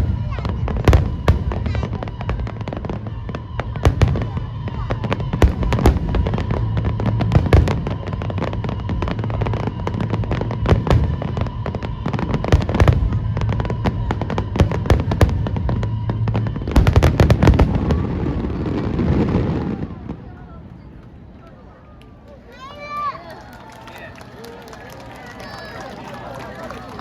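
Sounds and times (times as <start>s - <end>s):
fireworks bursting and crackling: 0.0s - 21.3s.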